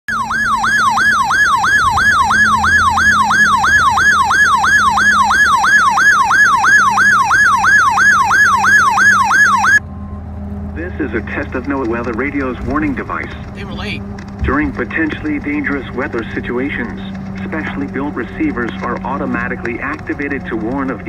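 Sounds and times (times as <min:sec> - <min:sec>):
electronic siren alarm wailing: 0:00.1 - 0:11.4.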